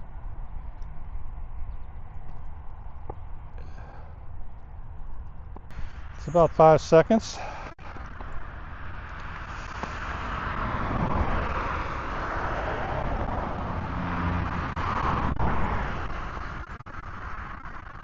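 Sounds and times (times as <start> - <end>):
vehicle passing by: 7.4 - 18.0.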